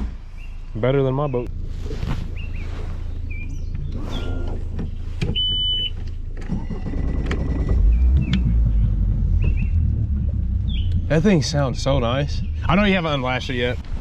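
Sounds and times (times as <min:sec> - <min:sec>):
outboard motor droning: 0:06.4 - 0:13.5.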